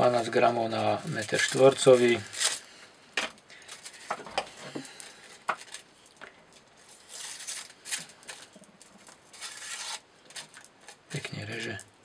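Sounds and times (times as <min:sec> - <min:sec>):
knife cutting paper: 0:09.3 - 0:10.6.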